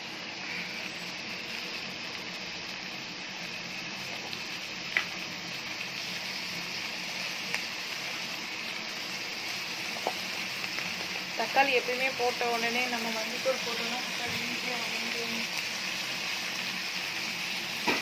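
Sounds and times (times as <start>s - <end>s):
food sizzling in a pan: 0.0s - 18.0s.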